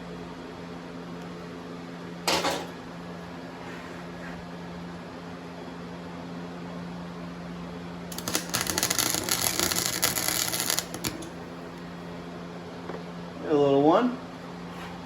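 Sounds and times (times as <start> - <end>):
steady low hum: 0.0 - 15.0
welder click: 8.1 - 11.4
welder arc crackling: 8.1 - 11.8.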